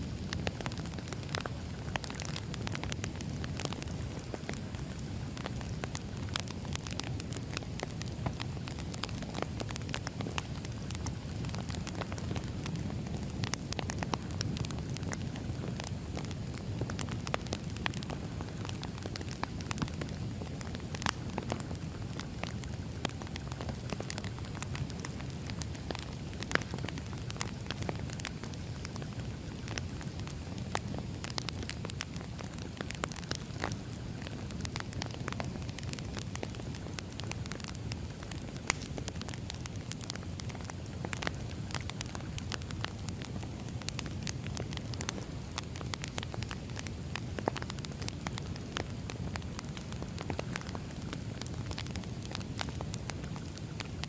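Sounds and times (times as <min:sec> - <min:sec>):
fire popping and snapping: 0:00.0 - 0:54.0
fire rumbling: 0:00.0 - 0:54.0.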